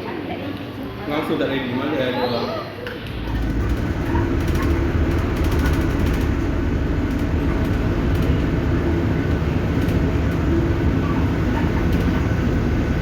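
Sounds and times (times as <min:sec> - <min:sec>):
vehicle rumble from inside: 0:03.1 - 0:13.0.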